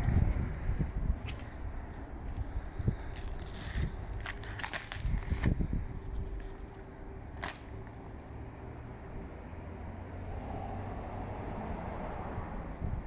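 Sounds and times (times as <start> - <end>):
packaging crinkling: 2.3 - 5.6.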